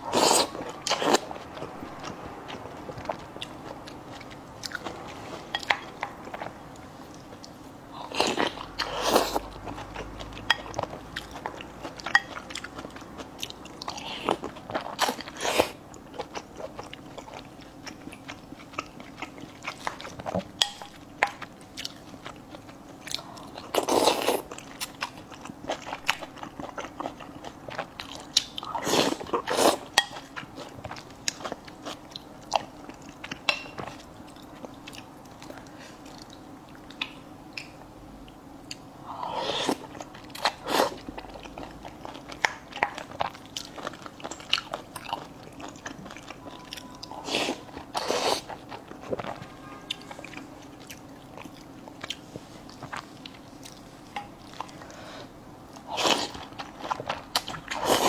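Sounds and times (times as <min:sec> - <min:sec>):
person chewing crunchy food: 0:00.0 - 0:37.8, 0:38.7 - 0:58.0.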